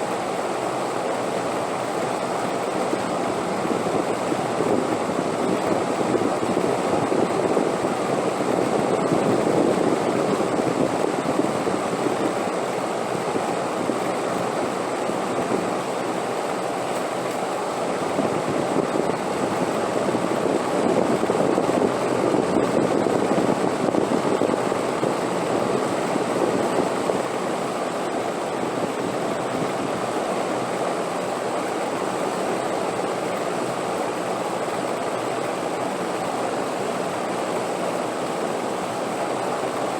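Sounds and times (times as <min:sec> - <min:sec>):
wind blowing: 0:17.6 - 0:32.3.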